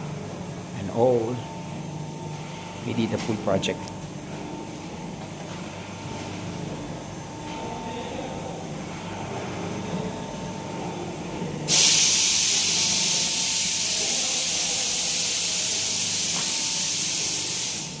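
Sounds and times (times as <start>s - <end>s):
low machinery hum: 0.0s - 18.0s
loud steady hiss: 11.7s - 18.0s.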